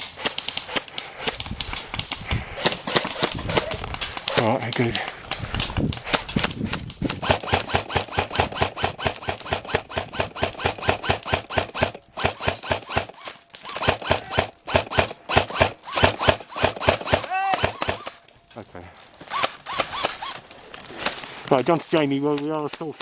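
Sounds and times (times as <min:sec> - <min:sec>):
airsoft gunfire: 0:00.0 - 0:04.4, 0:06.0 - 0:18.2.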